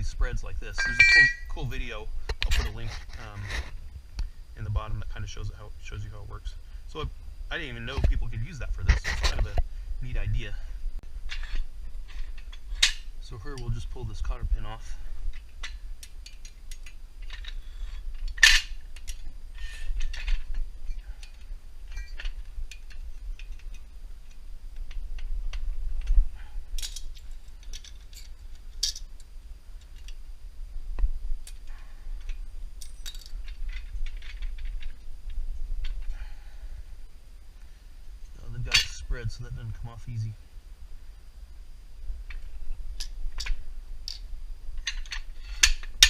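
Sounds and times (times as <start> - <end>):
metal clank: 0.7 - 1.8
metal pin clicking and clinking: 0.8 - 1.5, 26.8 - 30.2, 32.2 - 34.9.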